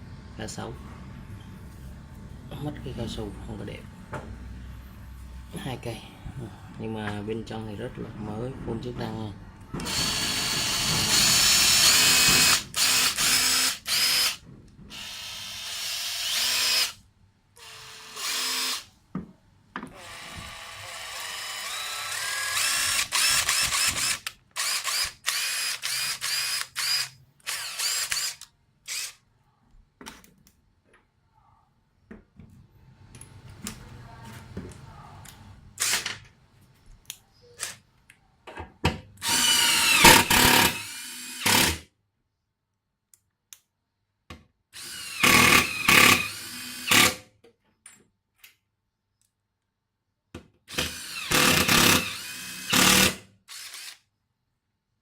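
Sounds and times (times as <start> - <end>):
impact driver motor whirring: 9.8 - 17.0, 17.6 - 18.9, 20.0 - 29.1, 39.2 - 41.7, 50.7 - 54.0.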